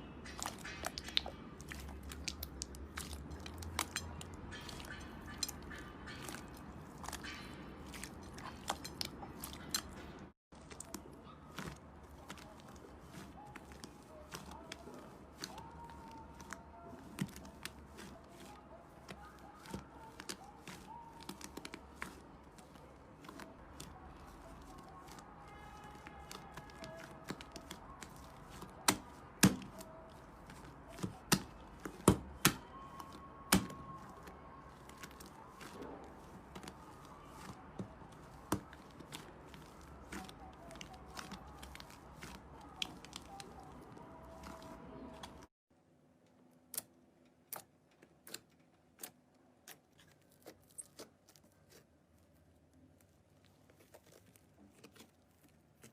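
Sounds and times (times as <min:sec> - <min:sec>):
slime popping and crackling: 0:00.2 - 0:10.0, 0:10.6 - 0:45.5.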